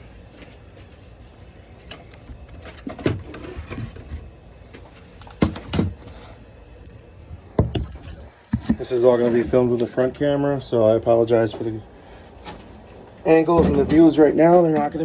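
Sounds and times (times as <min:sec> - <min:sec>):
equipment knocking and clattering: 0:05.2 - 0:06.1, 0:13.5 - 0:15.0.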